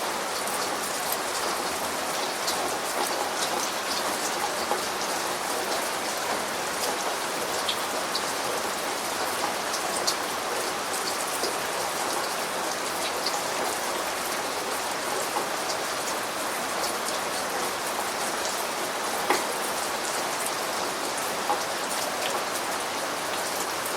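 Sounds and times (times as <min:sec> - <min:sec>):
raindrops ticking on a surface: 0:00.0 - 0:23.9
steady rain falling: 0:00.0 - 0:23.9.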